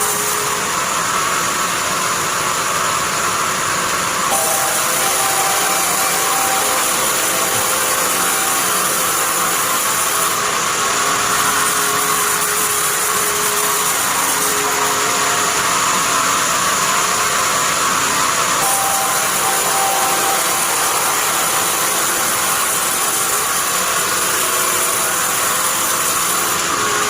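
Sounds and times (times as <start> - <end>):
bandsaw machine running: 0.0 - 27.0.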